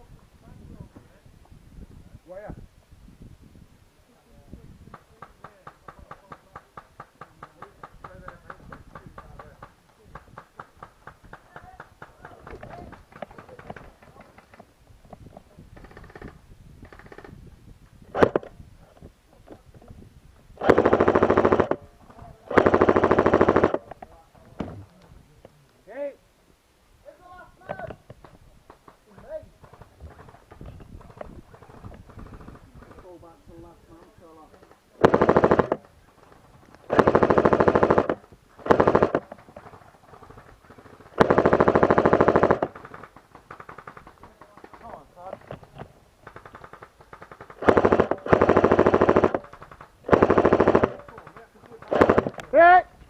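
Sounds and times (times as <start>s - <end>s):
airsoft rifle automatic bursts: 20.6s - 21.8s, 22.5s - 23.9s, 35.0s - 35.9s, 36.9s - 44.9s, 46.2s - 52.6s.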